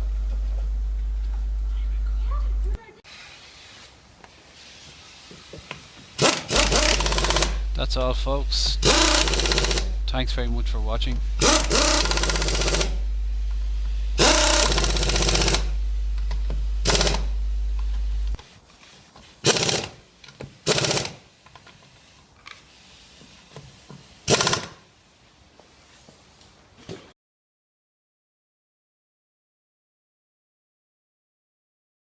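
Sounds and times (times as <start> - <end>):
low hum: 0.0 - 2.8, 6.5 - 18.4
rapid mechanical rattling: 6.2 - 7.7, 8.6 - 10.1, 11.1 - 13.0, 14.2 - 17.9.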